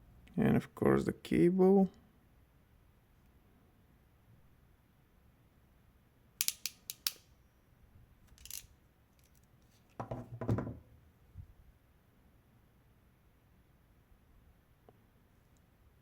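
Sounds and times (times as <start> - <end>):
ratchet crimping pliers clicking: 6.4 - 7.2, 8.3 - 8.7.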